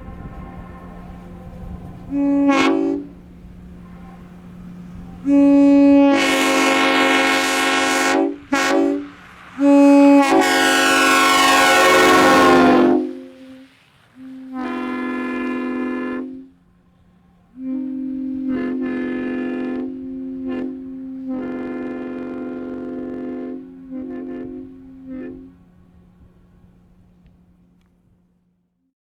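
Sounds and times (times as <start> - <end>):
locomotive air horn blasts: 0.0 - 27.4.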